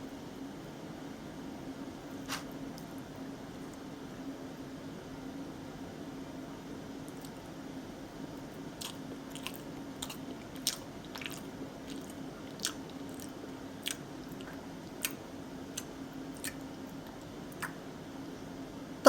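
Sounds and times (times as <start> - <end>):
person chewing crunchy food: 8.8 - 17.8.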